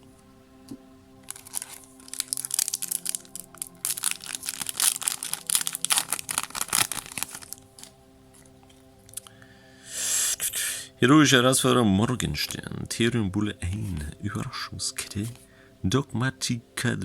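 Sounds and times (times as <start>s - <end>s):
quiet background music: 0.0s - 17.0s
foil wrapper crinkling: 1.2s - 9.4s.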